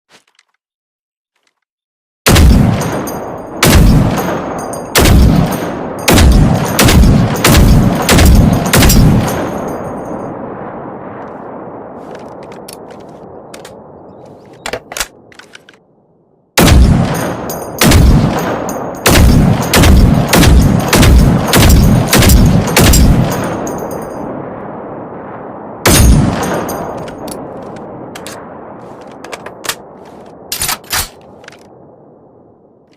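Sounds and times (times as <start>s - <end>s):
rifle shots with rolling echo: 2.3s - 15.6s, 16.6s - 32.8s.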